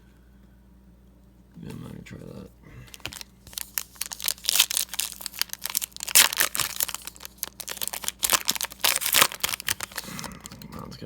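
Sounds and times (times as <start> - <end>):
wrapper being torn and crinkled: 2.9 - 10.6.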